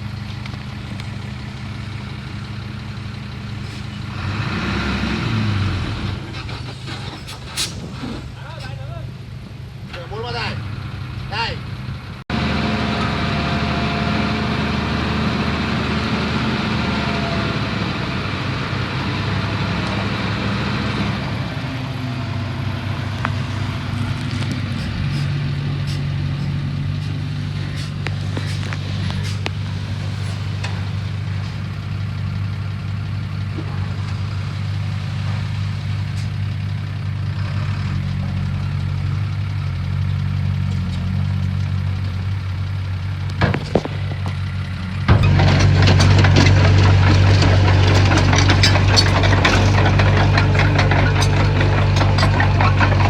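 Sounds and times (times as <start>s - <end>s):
heavy machinery diesel engine: 0.0s - 53.0s
sharp knocks and clanks: 43.3s - 53.0s.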